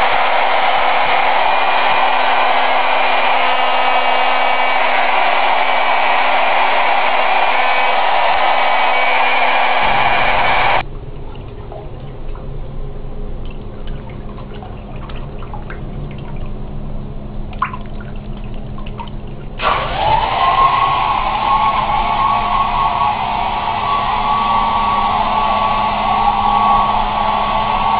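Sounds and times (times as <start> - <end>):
hair dryer blowing air: 0.0 - 10.8, 19.6 - 27.9
low hum: 0.0 - 27.9.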